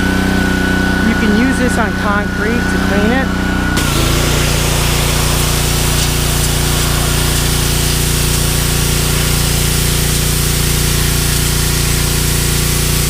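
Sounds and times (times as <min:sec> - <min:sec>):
pressure washer motor humming: 0:00.0 - 0:13.0
water jet hissing on concrete: 0:00.0 - 0:13.0.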